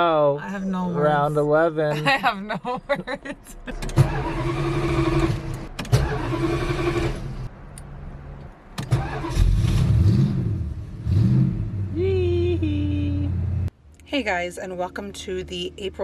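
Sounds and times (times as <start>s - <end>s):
car engine cranking on starter: 3.7s - 7.5s, 8.7s - 11.6s.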